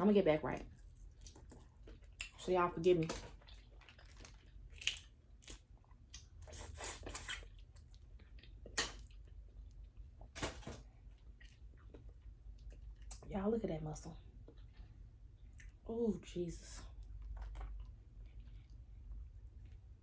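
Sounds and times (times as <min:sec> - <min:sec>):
person chewing: 0:00.9 - 0:02.4, 0:03.3 - 0:10.0, 0:14.3 - 0:15.8, 0:17.0 - 0:19.9
shellfish shells cracking: 0:03.0 - 0:05.6.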